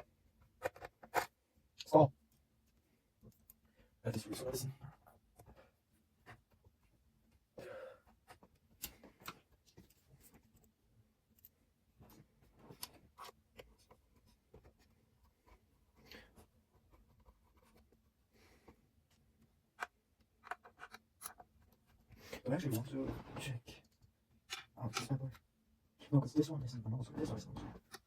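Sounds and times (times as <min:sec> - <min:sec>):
hands handling computer parts: 0:08.1 - 0:15.7, 0:27.2 - 0:28.0.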